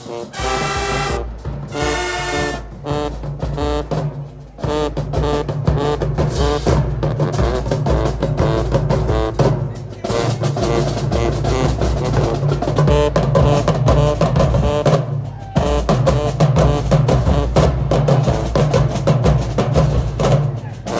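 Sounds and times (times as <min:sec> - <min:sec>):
loud music with heavy bass beat: 0:04.6 - 0:20.9.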